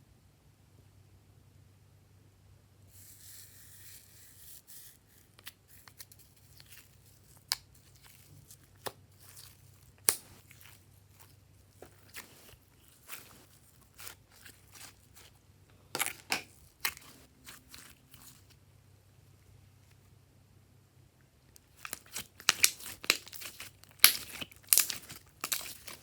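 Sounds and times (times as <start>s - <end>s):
slime crinkling hiss: 2.9s - 15.4s, 16.0s - 18.5s, 21.6s - 26.0s
slime popping and clicking: 21.7s - 26.0s.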